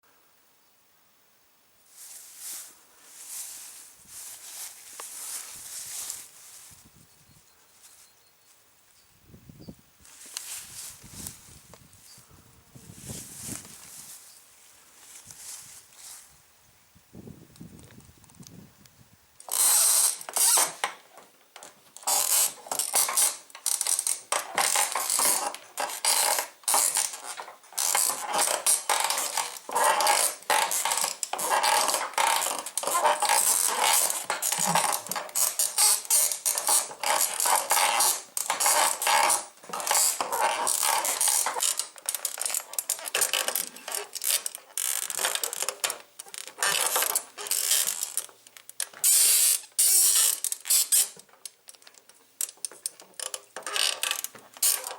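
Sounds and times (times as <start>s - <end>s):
bicycle saddle springs squeaking: 19.4s - 20.9s, 22.0s - 54.9s.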